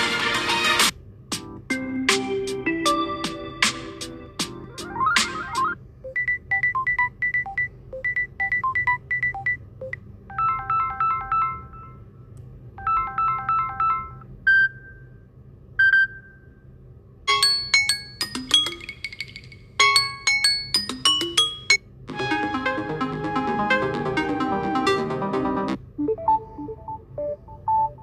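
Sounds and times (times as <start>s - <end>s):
electronic ringtone tunes: 1.7s - 9.6s, 10.3s - 12.0s, 12.8s - 14.8s, 17.3s - 28.0s.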